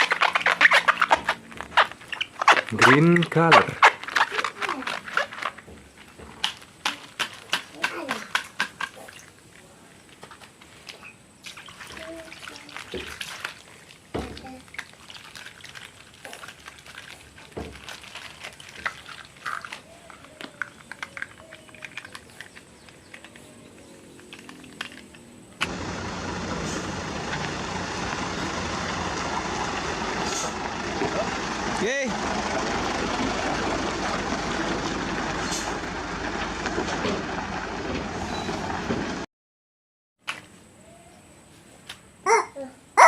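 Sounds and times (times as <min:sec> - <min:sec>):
plastic toys clicking and knocking: 0:04.0 - 0:09.0, 0:16.4 - 0:25.3.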